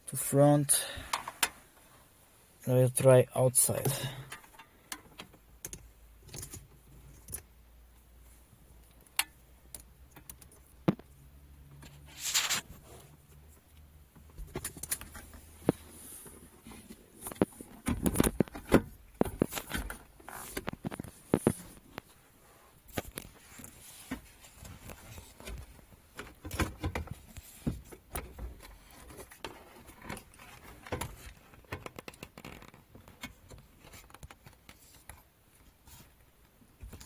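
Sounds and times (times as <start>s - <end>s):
rustling: 11.8s - 13.6s.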